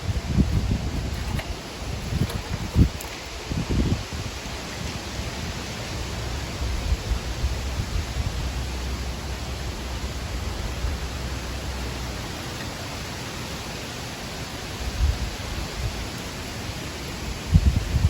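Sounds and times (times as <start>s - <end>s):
wind buffeting microphone: 0.0s - 12.2s, 14.8s - 16.1s, 17.2s - 18.0s
rushing wind: 0.0s - 18.0s.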